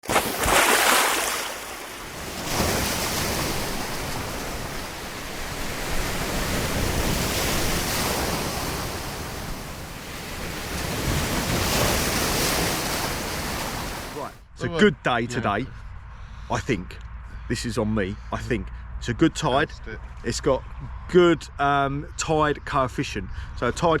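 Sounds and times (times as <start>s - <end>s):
sea waves breaking: 0.0s - 14.4s.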